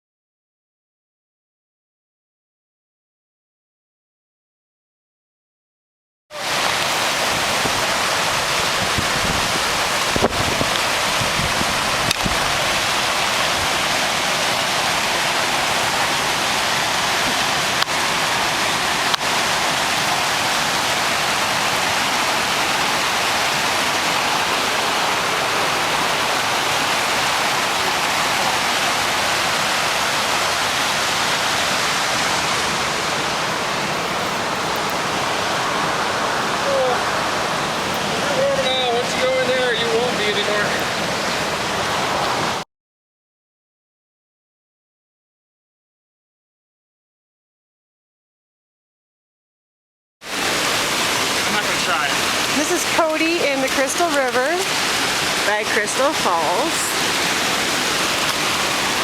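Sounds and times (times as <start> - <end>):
water rushing over rocks: 6.3 - 42.6, 50.2 - 59.0.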